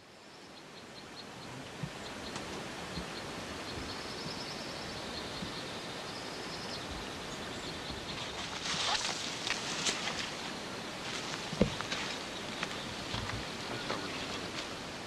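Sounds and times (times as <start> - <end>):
outdoor background noise: 0.0 - 15.0
rustle with sharp crackles: 1.5 - 15.0.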